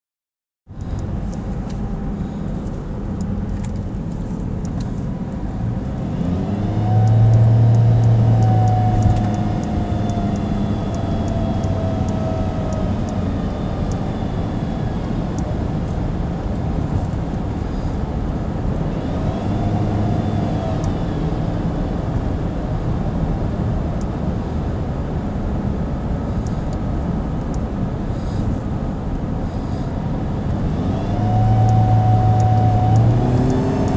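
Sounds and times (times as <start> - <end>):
car engine and road noise: 0.7 - 33.9.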